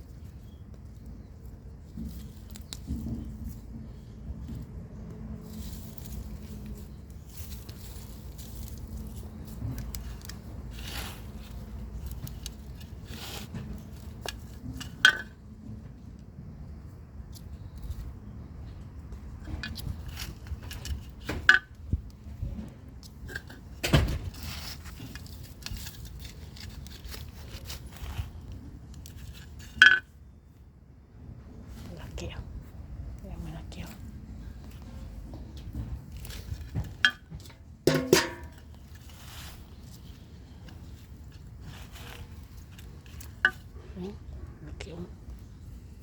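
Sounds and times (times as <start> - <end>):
earth rustling and scraping: 0.0 - 16.0, 16.6 - 30.4, 33.7 - 44.3
sharp knocks and clinks: 36.9 - 38.8.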